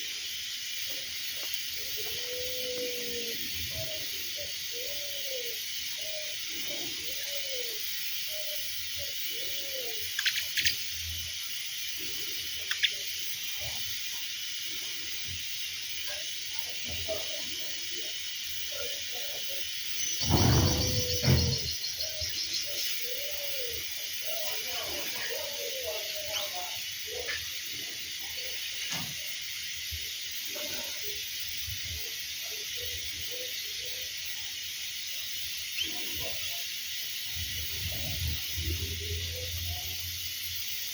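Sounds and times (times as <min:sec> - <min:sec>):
steady high hiss: 0:00.0 - 0:40.9
birds calling: 0:00.4 - 0:14.8, 0:15.4 - 0:31.3, 0:32.2 - 0:40.2
sharp high chirps: 0:09.3 - 0:13.8.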